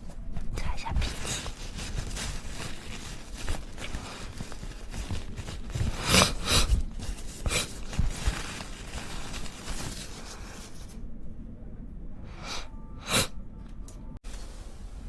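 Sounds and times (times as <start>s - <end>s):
woman blowing nose: 5.9s - 6.8s, 12.4s - 13.3s.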